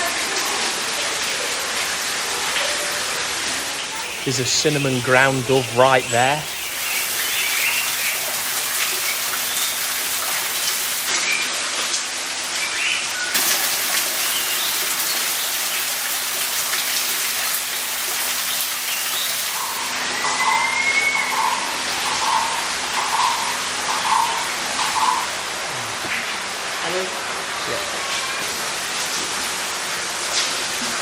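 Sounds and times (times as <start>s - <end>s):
hiss of falling water: 0.0s - 20.1s
bird chirps: 3.8s - 9.9s, 18.9s - 25.3s
bird repeated notes: 3.9s - 9.4s, 19.5s - 25.4s
bird rising whistle: 19.6s - 25.3s.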